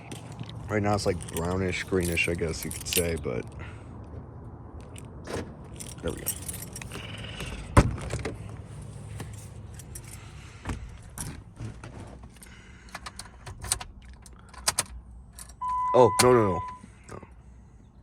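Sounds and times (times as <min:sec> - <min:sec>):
keys jangling: 0:00.0 - 0:03.3, 0:04.8 - 0:07.5, 0:09.4 - 0:11.4.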